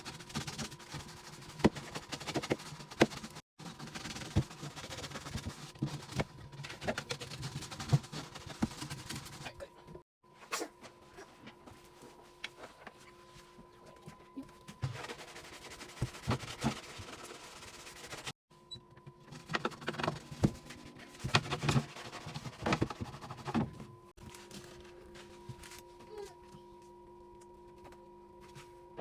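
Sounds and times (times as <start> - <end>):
faint steady hum: 23.4 - 29.0.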